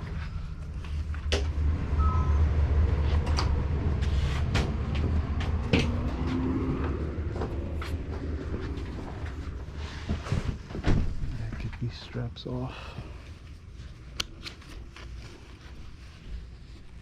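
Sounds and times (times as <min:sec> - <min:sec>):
heavy vehicle rumble: 0:00.0 - 0:11.9.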